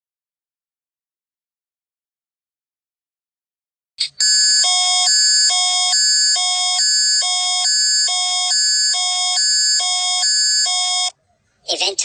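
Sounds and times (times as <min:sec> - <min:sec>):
emergency alert tones: 0:04.2 - 0:11.2.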